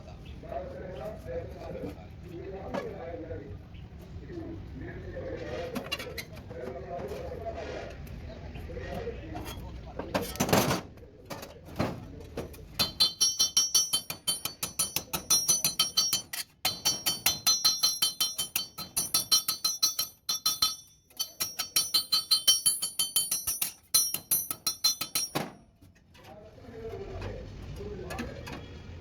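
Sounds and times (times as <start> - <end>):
hammer blows on sheet metal: 12.8 - 25.6.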